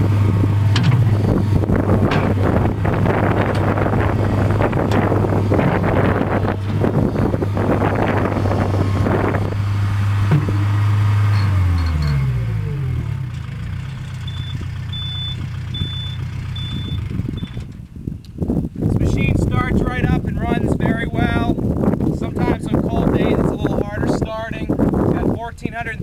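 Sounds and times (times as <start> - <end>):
diesel engine winding down: 0.0 - 19.2
short high-pitched electronic beeps: 14.2 - 17.6.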